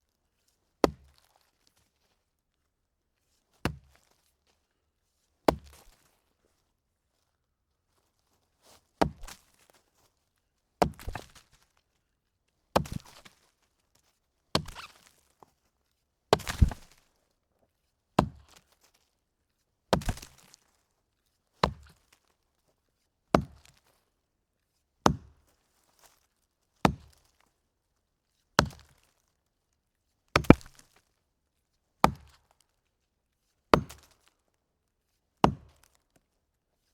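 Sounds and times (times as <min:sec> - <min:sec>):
axe chopping log: 0:03.7 - 0:03.9, 0:05.5 - 0:05.8, 0:09.0 - 0:09.4, 0:10.8 - 0:11.4, 0:12.8 - 0:13.2, 0:14.6 - 0:14.9, 0:16.3 - 0:17.0, 0:18.2 - 0:18.4, 0:19.9 - 0:20.5, 0:21.6 - 0:22.0, 0:23.4 - 0:23.8, 0:25.0 - 0:25.4, 0:26.9 - 0:27.2, 0:28.6 - 0:28.9, 0:30.4 - 0:30.8, 0:32.0 - 0:32.4, 0:33.7 - 0:34.2, 0:35.4 - 0:35.9.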